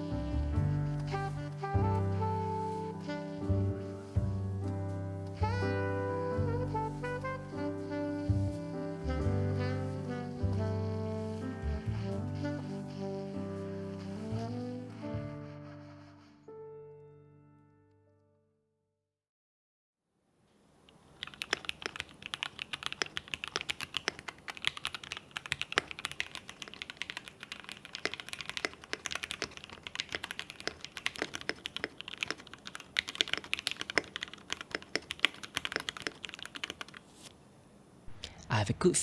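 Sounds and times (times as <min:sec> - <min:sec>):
mechanical keyboard typing: 0:21.2 - 0:37.1.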